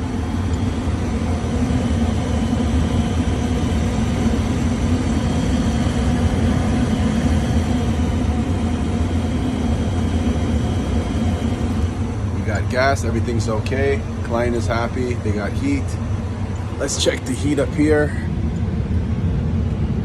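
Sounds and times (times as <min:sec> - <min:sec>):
gas furnace rumbling: 0:00.0 - 0:20.0.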